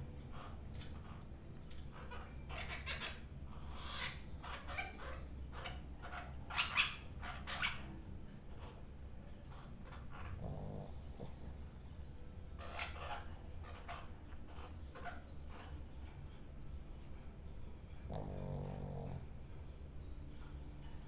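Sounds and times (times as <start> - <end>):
low steady hum: 0.0 - 21.0
pet snoring: 10.1 - 11.8, 18.0 - 19.4.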